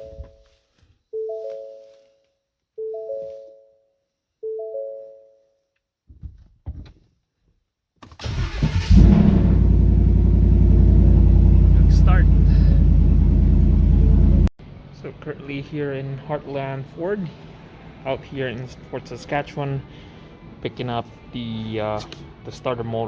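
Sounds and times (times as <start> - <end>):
engine cranking: 8.2 - 13.0
engine idling: 8.2 - 14.5.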